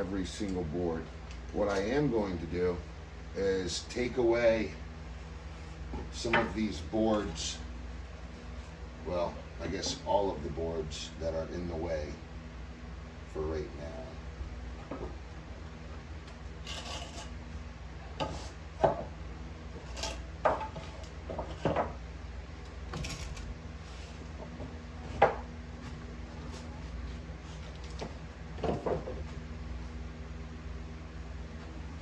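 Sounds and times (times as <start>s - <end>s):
wood scraping on wood: 16.3s - 17.4s, 18.2s - 18.6s, 19.8s - 22.0s.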